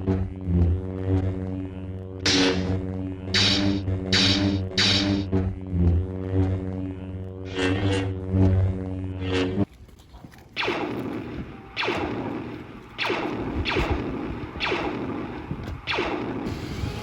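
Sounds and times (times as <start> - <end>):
laser blaster zaps: 2.2 - 5.6, 6.3 - 9.7, 10.6 - 17.0.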